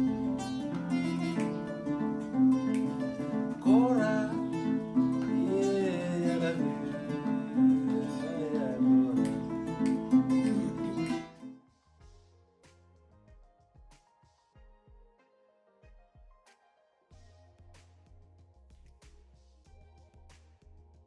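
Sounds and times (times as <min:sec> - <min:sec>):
gliding melody line: 0:00.0 - 0:11.6
plucked acoustic guitar: 0:00.0 - 0:11.6.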